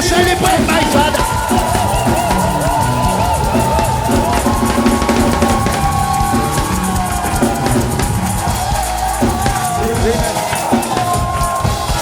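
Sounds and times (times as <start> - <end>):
drum kit beat: 0.0 - 12.0
long held tones: 1.0 - 9.8.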